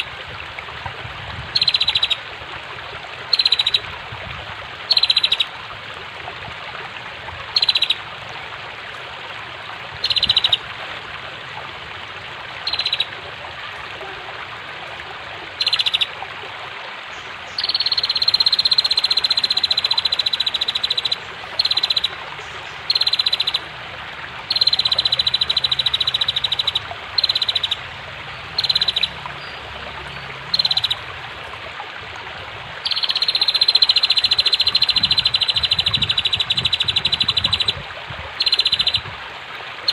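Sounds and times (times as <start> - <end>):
flowing water: 0.0 - 39.9
bird trilling: 1.6 - 2.2, 4.9 - 5.4, 7.6 - 8.0, 10.0 - 10.6, 12.6 - 13.1, 15.6 - 16.1, 17.6 - 22.2, 22.9 - 23.7, 24.5 - 27.8, 28.6 - 29.6, 30.5 - 31.0, 32.8 - 37.7, 38.4 - 39.0.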